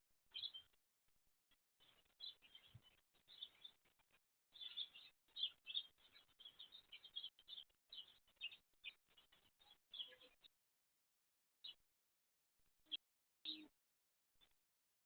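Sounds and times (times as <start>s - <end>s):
faint birds chirping: 0.3s - 0.8s, 1.8s - 10.6s, 11.6s - 11.8s, 12.7s - 13.8s.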